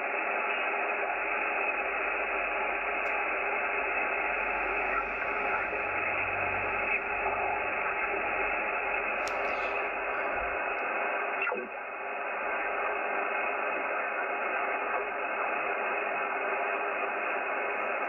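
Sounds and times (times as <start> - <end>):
radio static hiss: 0.0 - 18.0
click: 9.2 - 9.8.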